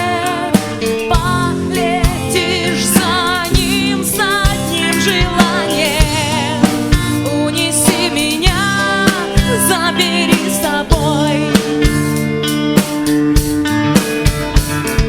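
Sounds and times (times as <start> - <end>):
woman singing with vibrato: 0.0 - 12.0
pop backing track: 0.0 - 15.0
steady drum beat: 0.0 - 15.0.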